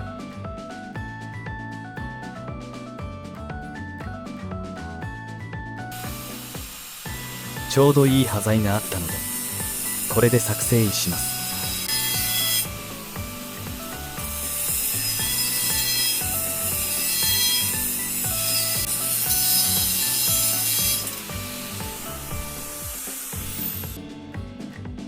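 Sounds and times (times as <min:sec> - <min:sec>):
background music: 0:00.0 - 0:25.0
filing steel rasping: 0:09.0 - 0:24.0.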